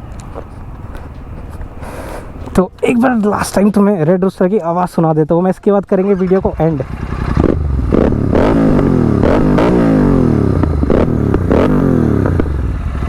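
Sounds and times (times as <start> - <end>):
exhaust pops and crackles: 5.7 - 13.0
motorcycle engine revving: 6.0 - 13.0.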